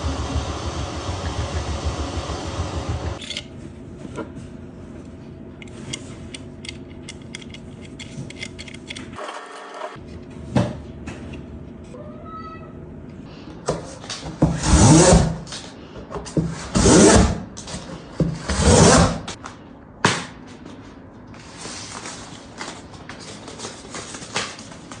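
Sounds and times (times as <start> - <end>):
tool scraping cardboard: 14.4 - 15.4, 16.4 - 17.4, 18.2 - 19.4
cardboard rustling: 21.4 - 25.0.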